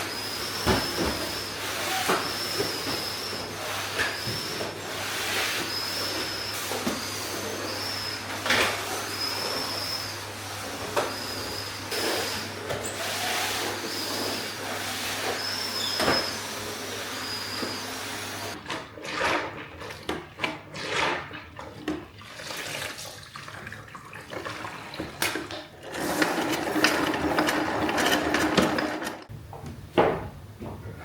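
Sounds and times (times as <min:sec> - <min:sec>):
handling and washing noises: 0:00.0 - 0:31.0
water running at a sink: 0:20.8 - 0:26.9.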